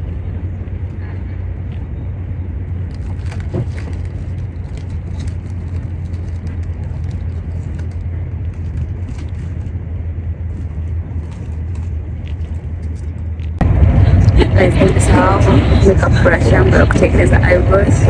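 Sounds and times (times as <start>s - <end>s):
train rumble inside carriage: 0.0s - 18.0s.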